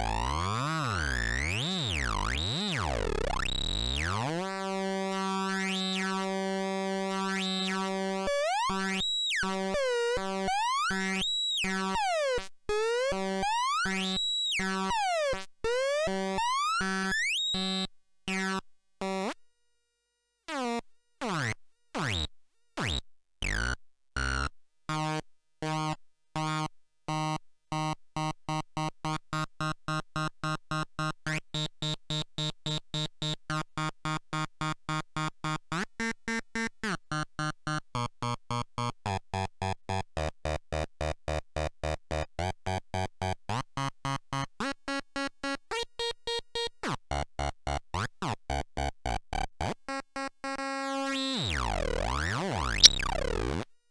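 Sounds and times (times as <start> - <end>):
buzzy synthesizer bleeps: 51.6 - 53.4.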